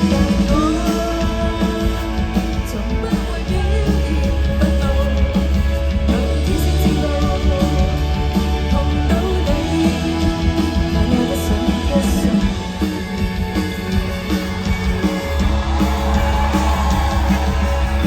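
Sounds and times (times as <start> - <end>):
bass line: 0.0 - 18.0
guitar: 0.0 - 18.0
live band playing: 0.0 - 18.0.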